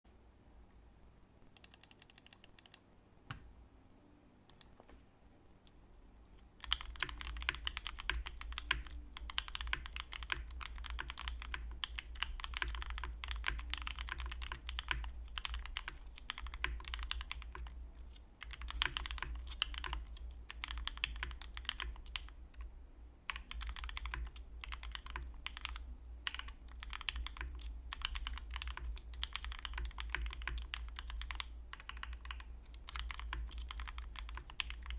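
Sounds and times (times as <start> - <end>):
keyboard typing clacks: 6.6 - 17.8, 18.4 - 22.4, 23.3 - 34.9.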